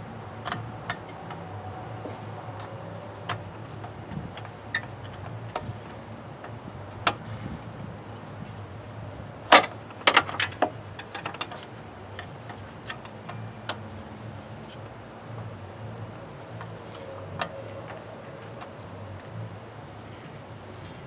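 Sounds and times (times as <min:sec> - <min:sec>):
hand tools clicking and clanking: 0:09.5 - 0:13.9.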